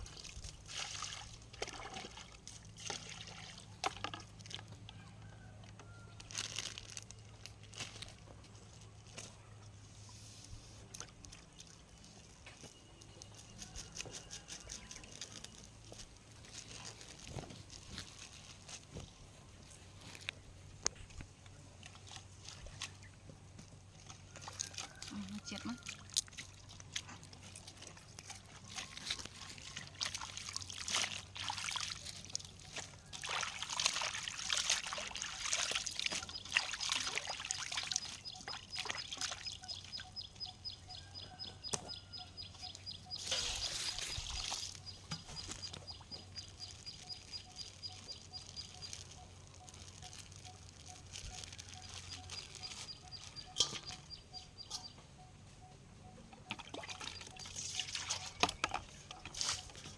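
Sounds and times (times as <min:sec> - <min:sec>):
water pouring and splashing: 0:00.0 - 0:04.9, 0:21.8 - 0:40.1, 0:43.1 - 0:54.0, 0:56.5 - 0:59.9.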